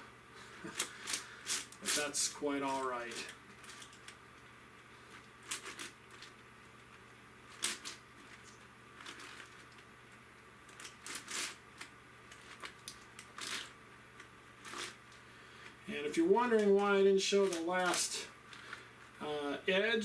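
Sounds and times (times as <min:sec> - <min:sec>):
puzzle cube clacking and scraping: 0:05.4 - 0:06.3, 0:07.5 - 0:09.7, 0:10.7 - 0:11.6, 0:14.6 - 0:15.0.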